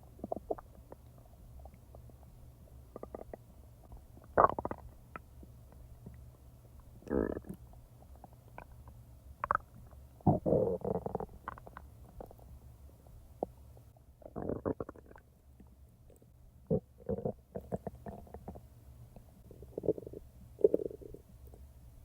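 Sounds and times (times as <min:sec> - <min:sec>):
stomach gurgling: 0:00.0 - 0:02.3, 0:02.9 - 0:06.2, 0:07.0 - 0:12.5, 0:14.2 - 0:15.3, 0:16.1 - 0:18.7, 0:19.4 - 0:21.7.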